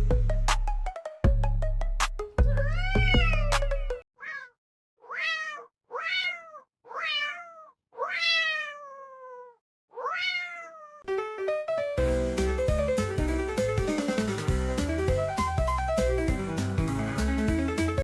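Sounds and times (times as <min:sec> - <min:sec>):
cat meowing: 0:04.2 - 0:11.0.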